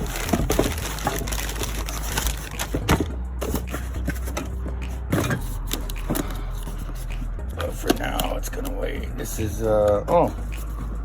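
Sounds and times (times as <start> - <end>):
packaging being handled: 0.0 - 4.3.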